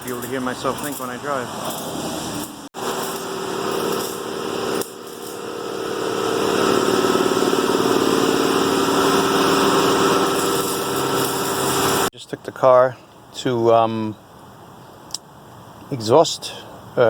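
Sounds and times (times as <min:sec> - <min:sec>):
car engine running: 0:02.8 - 0:12.1.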